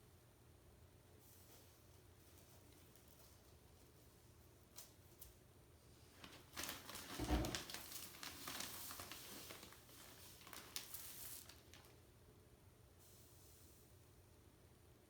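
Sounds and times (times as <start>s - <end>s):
plastic bag crinkling: 6.2s - 12.0s.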